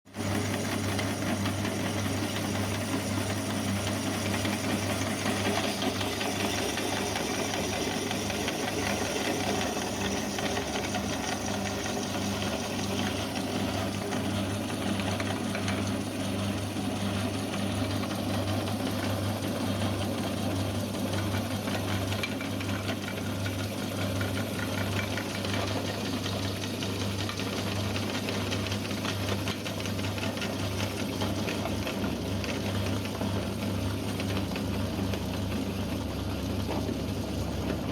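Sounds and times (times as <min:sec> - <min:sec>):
meat grinder motor hum: 0:00.1 - 0:37.9
mechanical rattle of grinder: 0:00.3 - 0:16.0.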